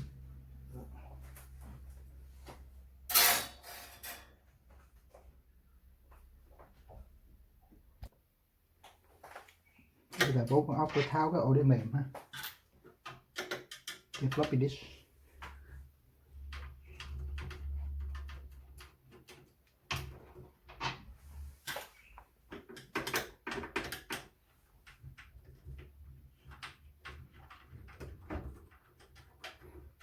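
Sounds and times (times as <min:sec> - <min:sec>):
clicks and knocks of screws: 0:12.2 - 0:14.6.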